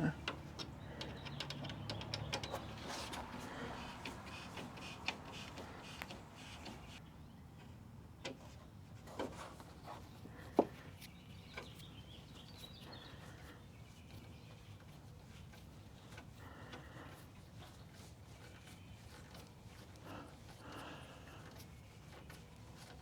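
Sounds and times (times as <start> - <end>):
light clicks and knocks: 0.2 - 7.0.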